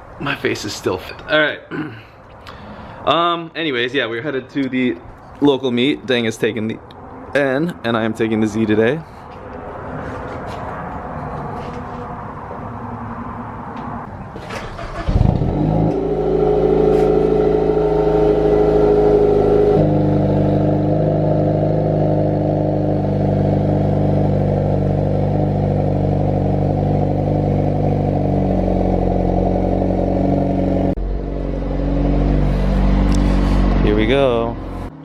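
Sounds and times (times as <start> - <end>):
car engine starting and idling: 13.7 - 35.0.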